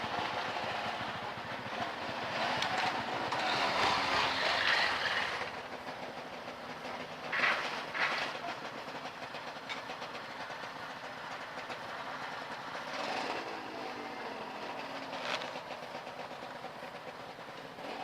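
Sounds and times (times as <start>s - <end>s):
motorcycle engine revving: 0.0s - 5.7s, 12.8s - 16.2s, 17.7s - 18.0s
motorcycle engine clattering: 0.1s - 13.6s, 14.6s - 18.0s.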